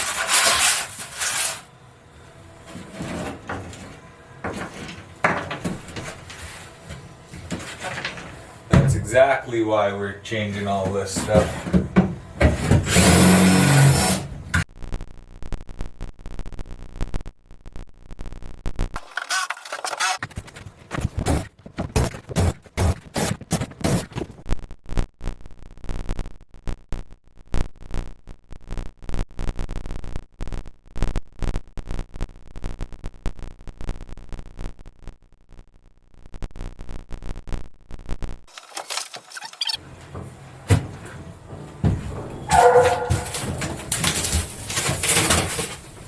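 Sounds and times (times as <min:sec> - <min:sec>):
floor panels scraping and rattling: 0:00.0 - 0:01.7, 0:02.6 - 0:09.3, 0:10.4 - 0:14.3, 0:38.5 - 0:46.0.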